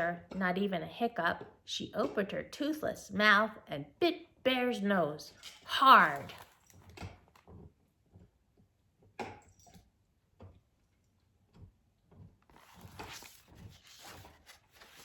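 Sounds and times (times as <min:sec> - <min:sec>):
page turning rustle: 0:06.0 - 0:07.4, 0:12.5 - 0:15.0.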